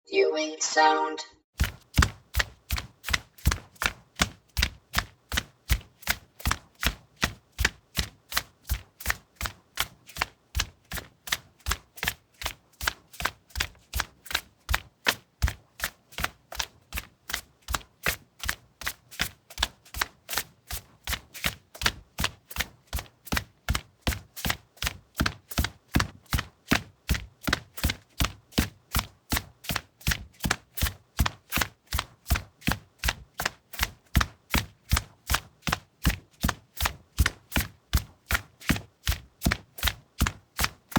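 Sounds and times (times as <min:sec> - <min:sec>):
running footsteps on linoleum: 0:01.6 - 0:40.9.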